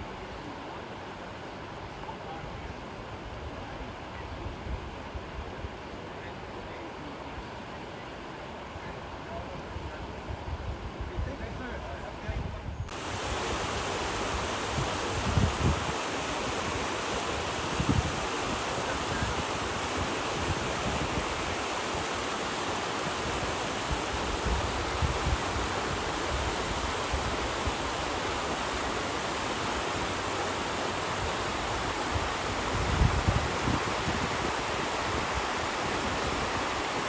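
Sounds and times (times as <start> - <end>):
wind buffeting microphone: 12.3 - 37.0
river water over rapids: 12.9 - 37.0.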